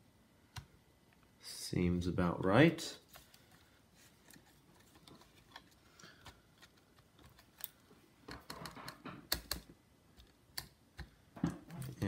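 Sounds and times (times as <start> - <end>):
laptop parts clicking and tapping: 4.2 - 12.0.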